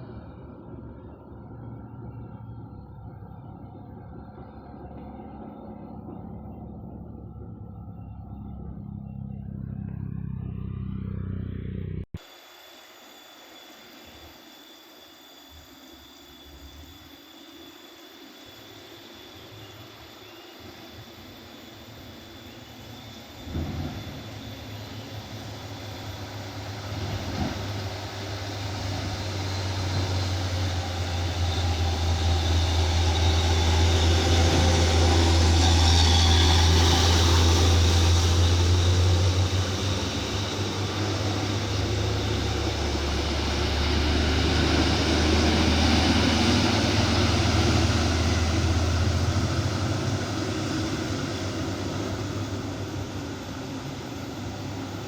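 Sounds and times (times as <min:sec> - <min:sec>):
diesel truck engine roaring: 0:00.0 - 0:12.2, 0:23.4 - 0:55.0.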